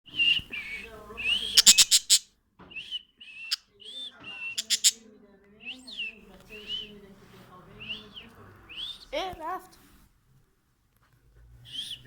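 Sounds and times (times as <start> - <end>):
bird whistling: 0.1 - 5.0, 5.7 - 7.0, 7.8 - 9.1.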